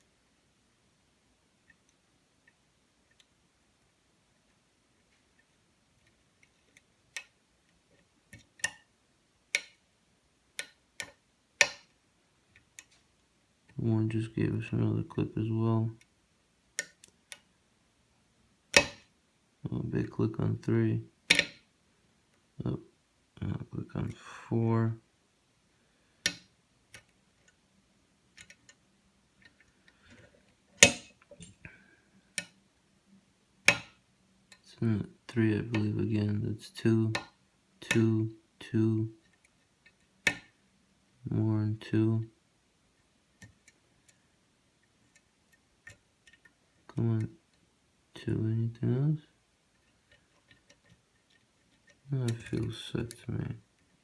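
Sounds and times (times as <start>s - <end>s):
lock pins clicking: 18.7s - 19.1s, 21.3s - 21.7s, 30.8s - 31.3s.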